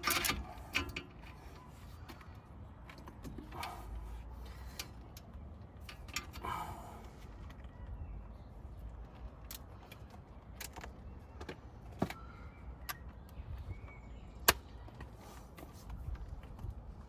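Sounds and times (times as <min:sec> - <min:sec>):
tools and metal parts clicking: 0:00.0 - 0:06.7, 0:09.1 - 0:12.2.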